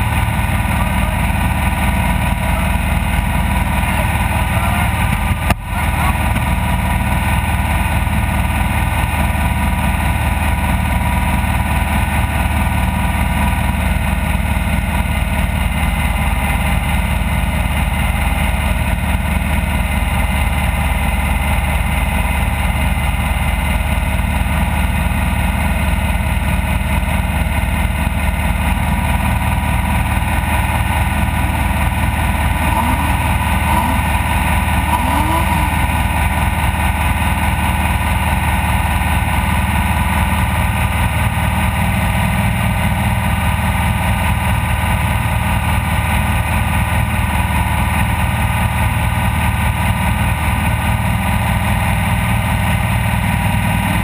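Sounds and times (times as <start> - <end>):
engine droning: 0.0 - 54.0.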